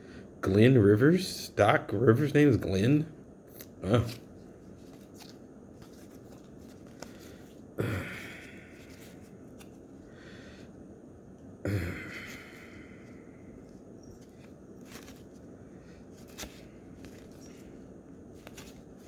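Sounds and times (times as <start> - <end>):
trading cards handling: 3.6 - 10.1, 12.2 - 19.0.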